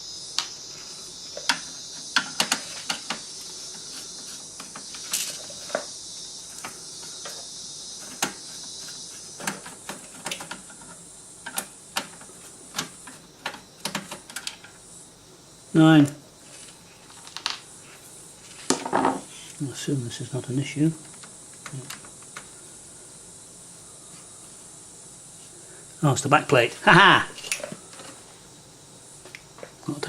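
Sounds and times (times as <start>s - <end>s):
steady high hiss: 0.0s - 30.0s.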